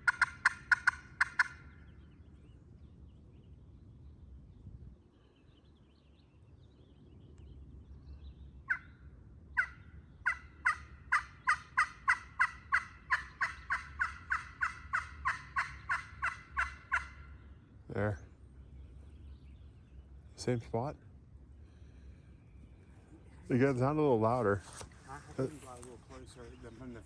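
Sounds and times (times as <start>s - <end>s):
turkey yelping: 0.0s - 1.8s, 8.6s - 9.0s, 9.6s - 17.4s.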